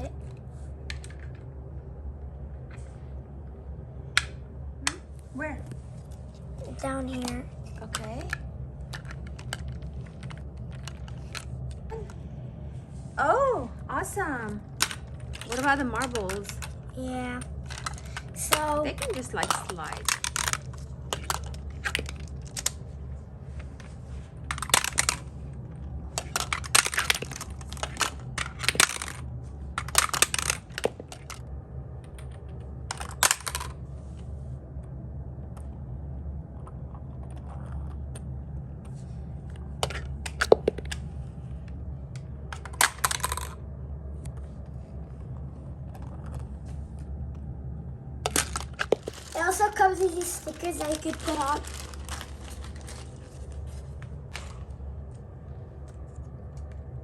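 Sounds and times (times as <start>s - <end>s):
marbles rolling and clattering: 0.0s - 1.5s, 6.0s - 12.2s, 14.7s - 33.9s, 39.5s - 41.0s, 42.5s - 43.6s, 48.2s - 55.1s.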